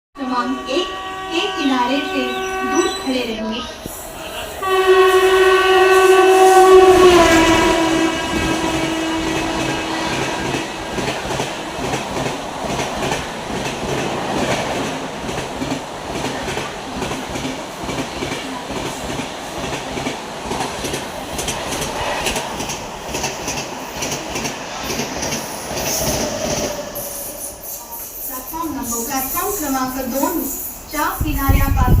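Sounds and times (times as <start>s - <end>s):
train horn: 0.2s - 11.8s, 25.8s - 27.9s.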